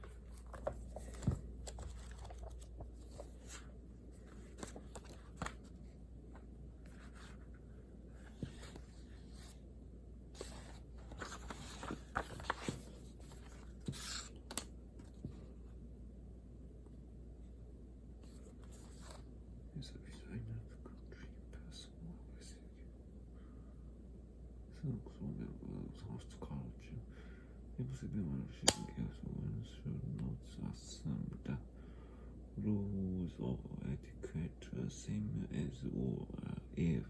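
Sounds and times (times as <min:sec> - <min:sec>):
paper rustling: 0:00.0 - 0:05.8, 0:10.4 - 0:15.3.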